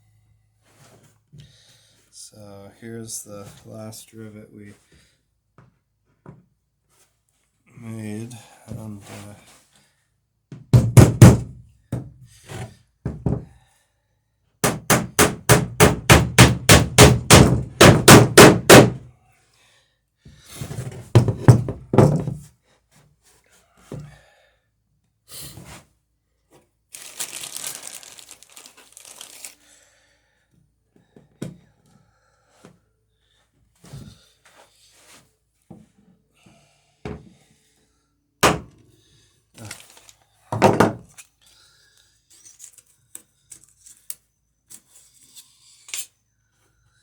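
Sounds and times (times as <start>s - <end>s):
heavy wooden knock: 10.8s - 12.1s, 21.2s - 22.3s, 40.6s - 41.0s.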